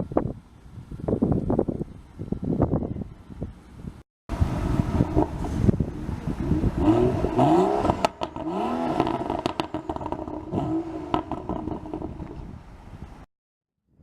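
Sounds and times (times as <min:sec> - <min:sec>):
car engine revving: 0:04.3 - 0:12.4
exhaust pops and crackles: 0:05.0 - 0:12.4.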